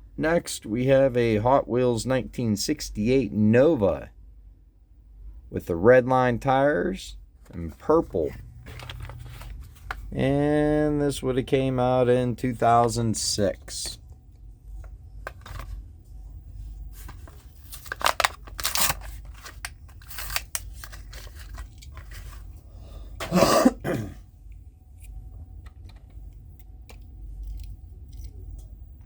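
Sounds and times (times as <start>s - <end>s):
plastic packaging crackling: 8.5s - 10.1s, 17.0s - 22.5s
cardboard tearing rasp: 17.8s - 20.9s.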